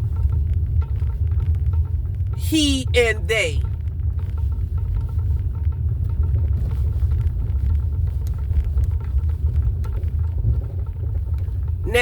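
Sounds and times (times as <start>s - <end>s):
low rumble: 0.0s - 12.0s
faint light ticks: 3.8s - 10.3s.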